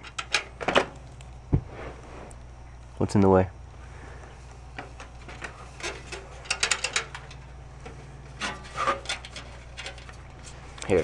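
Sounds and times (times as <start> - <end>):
steady low hum: 0.0 - 11.0
disc drive scraping and clicking: 4.5 - 10.6.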